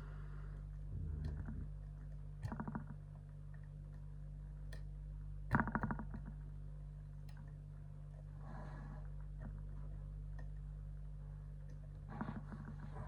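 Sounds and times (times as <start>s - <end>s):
low electrical hum: 0.0s - 13.0s.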